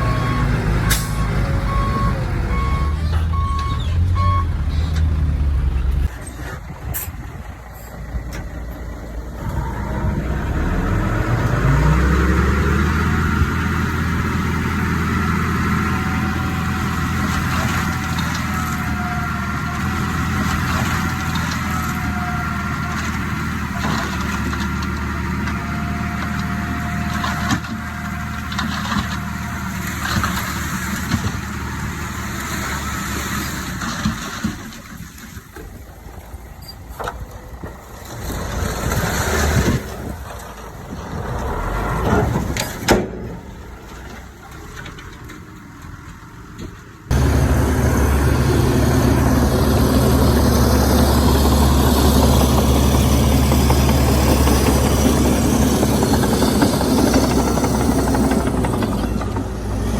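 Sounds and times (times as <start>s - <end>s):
reversing beeper: 0.0s - 5.0s
diesel engine revving: 0.0s - 34.4s, 37.6s - 59.9s.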